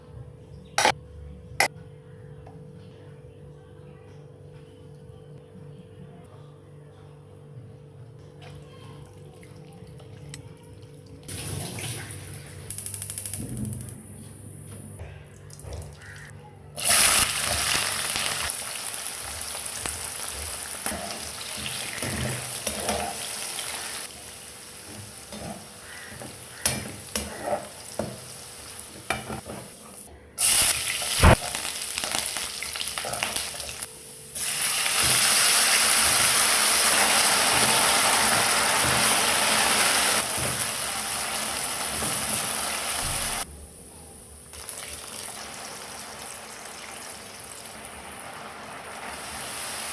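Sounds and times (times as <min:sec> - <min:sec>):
meat sizzling in oil: 0:16.8 - 0:29.1, 0:30.4 - 0:43.4, 0:44.6 - 0:49.9.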